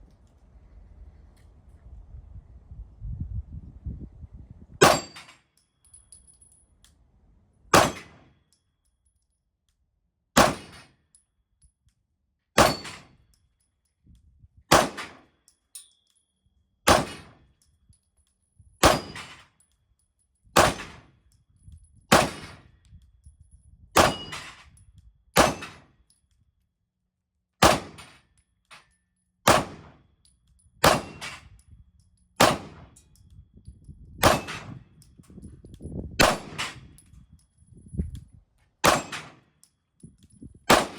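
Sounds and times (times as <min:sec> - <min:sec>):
pistol shots: 0:04.8 - 0:05.2, 0:07.7 - 0:08.2, 0:10.4 - 0:10.8, 0:12.6 - 0:13.0, 0:14.7 - 0:15.2, 0:16.9 - 0:17.4, 0:18.8 - 0:19.3, 0:20.6 - 0:21.0, 0:22.1 - 0:22.6, 0:24.0 - 0:24.4, 0:25.4 - 0:25.8, 0:27.6 - 0:28.1, 0:29.5 - 0:30.0, 0:30.8 - 0:31.4, 0:32.4 - 0:32.9, 0:34.2 - 0:34.8, 0:36.2 - 0:36.8, 0:38.8 - 0:39.4, 0:40.7 - 0:40.9.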